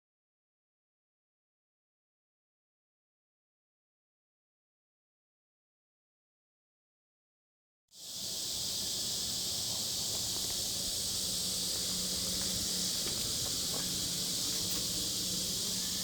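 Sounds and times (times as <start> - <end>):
insects buzzing: 8.0 - 16.0
faint low hum: 8.6 - 16.0.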